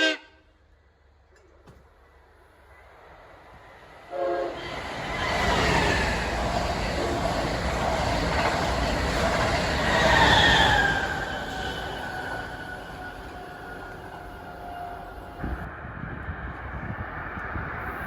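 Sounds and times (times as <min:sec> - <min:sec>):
train horn blast: 0:00.0 - 0:00.5, 0:04.1 - 0:04.6
train wheels rumbling on rail: 0:01.2 - 0:18.0.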